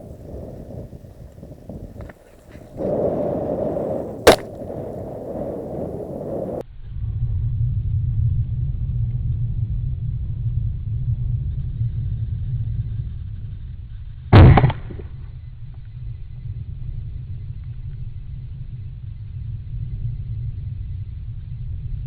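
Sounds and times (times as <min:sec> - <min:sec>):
steady low rumble: 0:00.0 - 0:11.4
shotgun shot: 0:03.8 - 0:06.6, 0:14.4 - 0:15.0.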